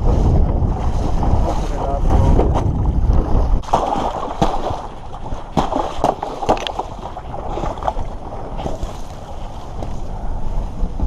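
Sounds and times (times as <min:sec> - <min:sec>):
wind buffeting microphone: 0:00.0 - 0:11.0
water sloshing: 0:00.7 - 0:11.0
sharp knocks or splashes: 0:02.0 - 0:09.1.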